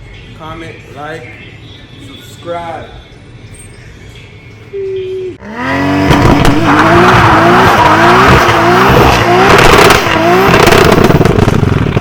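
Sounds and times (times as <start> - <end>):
car engine revving hard: 5.4 - 12.0
loud tyre noise: 5.4 - 12.0.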